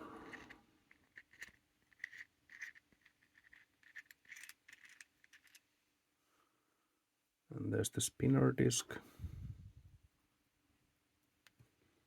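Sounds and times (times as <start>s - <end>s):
small tool clicking and scraping metal: 0.2s - 5.6s.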